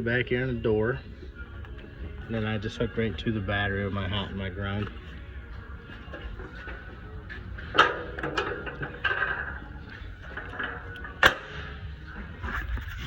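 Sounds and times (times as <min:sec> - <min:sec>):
soft clattering: 0:05.9 - 0:13.0.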